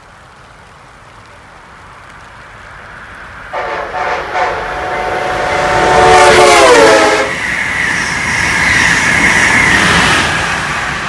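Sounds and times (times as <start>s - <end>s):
train rolling by: 1.2s - 11.0s
train air horn: 3.5s - 7.6s.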